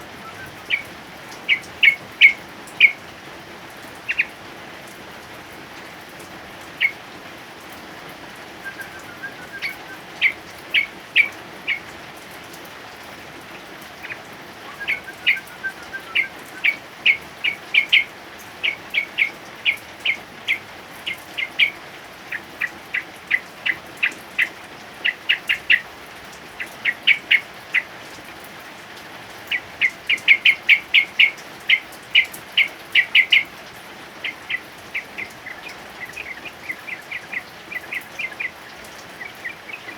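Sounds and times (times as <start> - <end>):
bird chirping: 0.0 - 3.1, 4.0 - 4.4, 6.8 - 7.0, 8.6 - 11.9, 14.0 - 25.9, 26.6 - 27.9, 29.5 - 33.6, 34.2 - 39.9
heavy rain hiss: 0.0 - 39.9.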